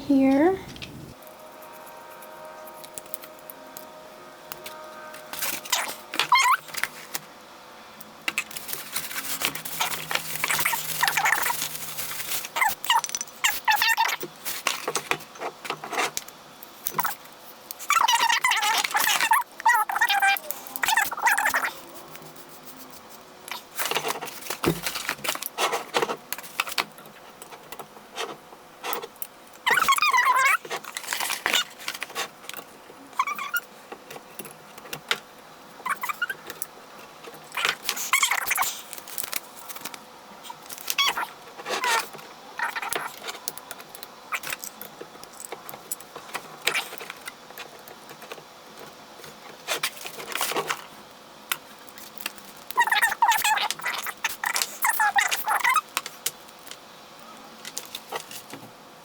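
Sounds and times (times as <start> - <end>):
small metal parts clinking: 8.8 - 14.7.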